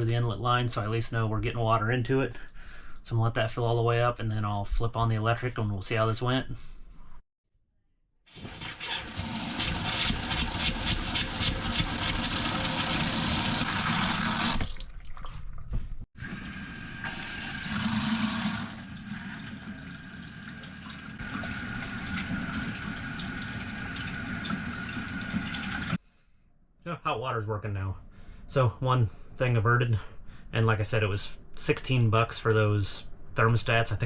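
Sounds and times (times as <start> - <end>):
water rushing through pipes: 8.3 - 15.5, 16.2 - 26.0.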